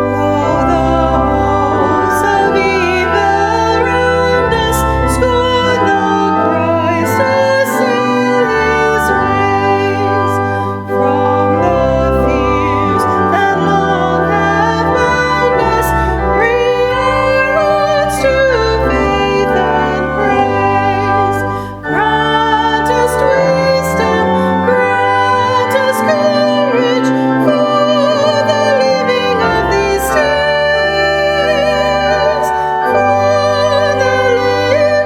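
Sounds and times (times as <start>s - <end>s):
person singing with vibrato: 0.0s - 35.0s
piano chords: 0.0s - 35.0s.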